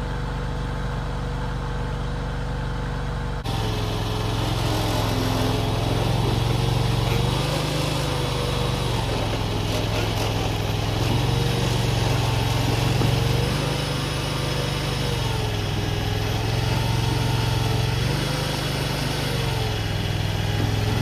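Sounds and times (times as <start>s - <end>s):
skid steer engine running: 0.0s - 21.0s.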